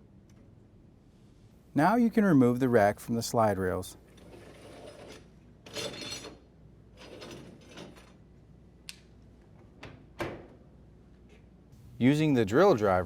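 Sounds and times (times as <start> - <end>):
rack scraping along rails: 4.2 - 6.4.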